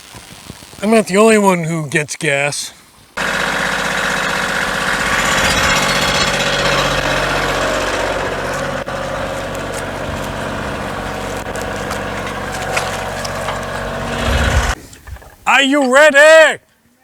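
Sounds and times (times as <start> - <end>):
engine droning with rattle: 3.2 - 15.3.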